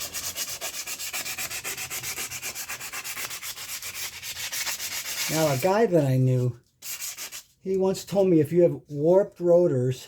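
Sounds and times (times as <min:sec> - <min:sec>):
sandpaper rubbing on steel: 0:00.0 - 0:07.5.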